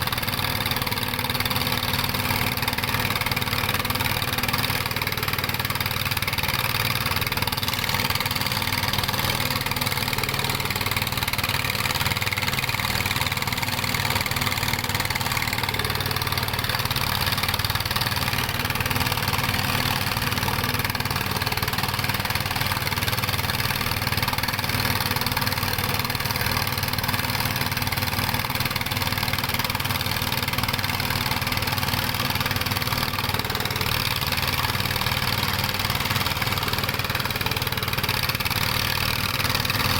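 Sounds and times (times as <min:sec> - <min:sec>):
diesel engine droning: 0:00.0 - 0:39.9.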